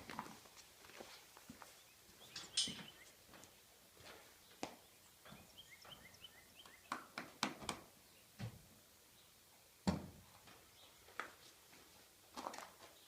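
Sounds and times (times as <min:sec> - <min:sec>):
small birds chirping: 0:01.3 - 0:07.2, 0:08.0 - 0:08.4, 0:09.0 - 0:09.8, 0:10.4 - 0:11.6.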